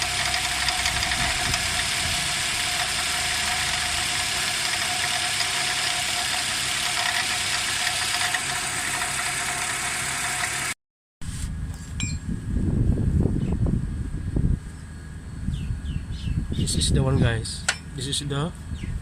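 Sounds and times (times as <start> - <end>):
car engine idling: 0.0 - 10.6.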